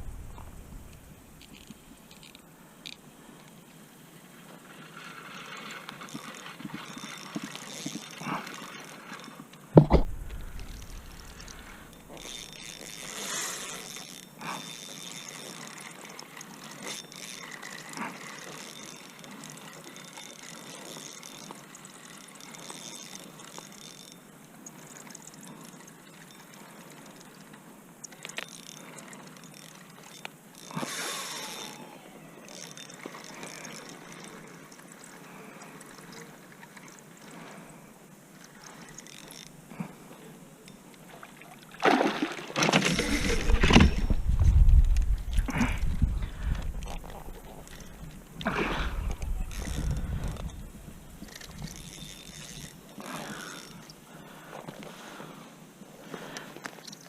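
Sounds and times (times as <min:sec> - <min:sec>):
heavy thump: 0:00.0 - 0:01.3, 0:09.8 - 0:11.5
water sloshing: 0:09.8 - 0:13.4, 0:38.6 - 0:55.1.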